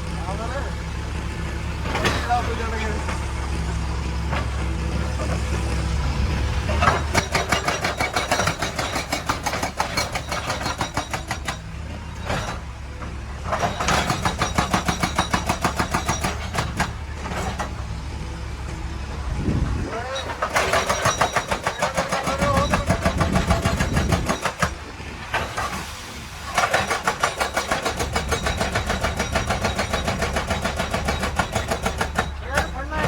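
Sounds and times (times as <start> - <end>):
excavator diesel engine running: 0.0 - 33.0
hydraulic rock breaker hammering: 6.6 - 17.9, 19.8 - 25.8, 26.5 - 33.0.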